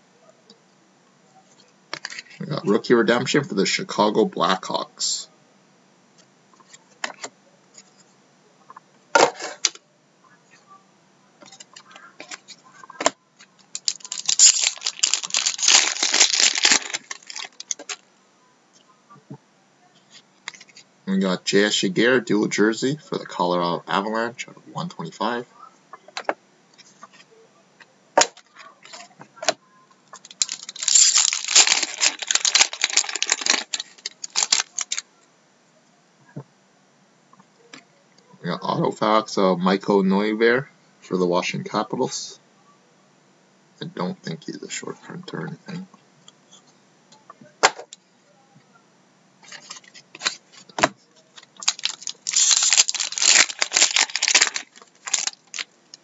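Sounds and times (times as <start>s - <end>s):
wrapper crinkling and tearing: 13.5s - 18.0s, 30.2s - 35.0s, 49.4s - 50.4s, 51.3s - 55.8s.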